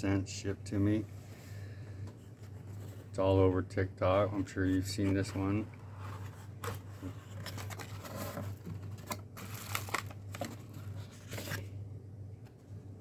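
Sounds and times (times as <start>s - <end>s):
steady low hum: 0.0s - 13.0s
packaging crinkling: 6.1s - 11.7s.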